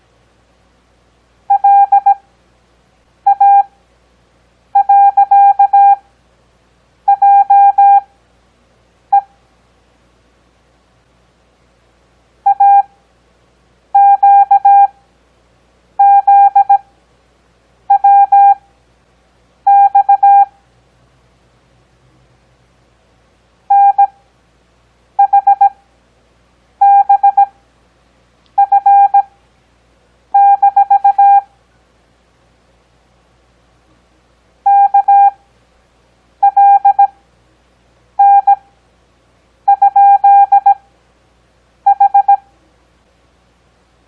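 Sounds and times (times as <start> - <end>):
morse code beeps: 1.5 - 2.2, 3.3 - 3.7, 4.8 - 6.0, 7.1 - 8.0, 12.5 - 12.9, 14.0 - 14.9, 16.0 - 16.8, 17.9 - 18.6, 19.7 - 20.5, 23.7 - 24.2, 25.2 - 25.8, 26.8 - 27.5, 28.6 - 29.3, 30.4 - 31.5, 34.7 - 35.4, 36.4 - 37.1, 38.2 - 38.6, 39.7 - 40.8, 41.9 - 42.4.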